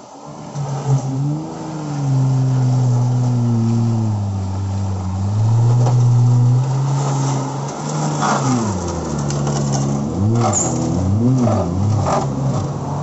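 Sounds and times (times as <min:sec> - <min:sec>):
vehicle engine running and revving: 0:00.3 - 0:13.0.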